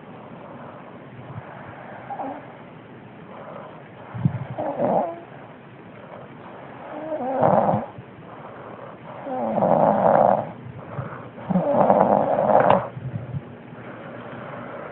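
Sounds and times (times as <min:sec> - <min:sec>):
quiet breathing: 0:00.0 - 0:14.9
long rasping snores: 0:03.4 - 0:05.3, 0:06.8 - 0:08.0, 0:09.1 - 0:12.9.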